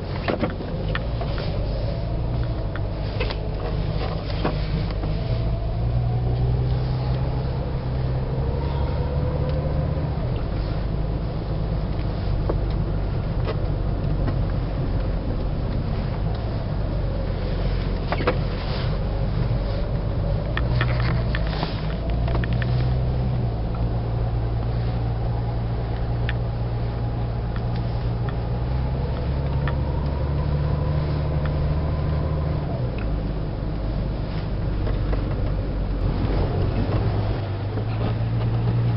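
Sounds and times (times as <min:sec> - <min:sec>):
car engine while driving: 0:00.0 - 0:38.9
road noise: 0:00.0 - 0:38.9.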